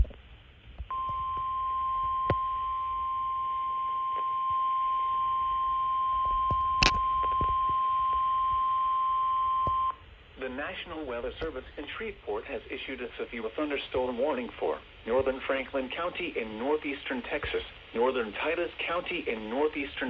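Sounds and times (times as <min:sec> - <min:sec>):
steady high alarm tone: 0:00.9 - 0:09.9.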